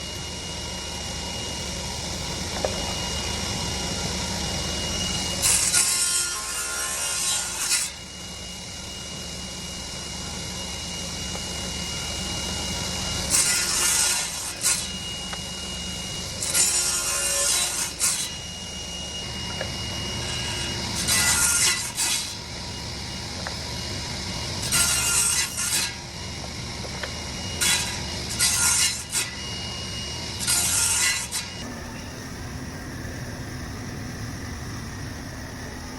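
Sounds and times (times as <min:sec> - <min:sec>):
table saw whining: 0:00.0 - 0:35.9
saw rasping through wood: 0:04.9 - 0:08.1, 0:12.8 - 0:15.2, 0:16.0 - 0:18.6, 0:20.1 - 0:22.5, 0:24.6 - 0:26.0, 0:27.4 - 0:29.6, 0:30.4 - 0:31.7.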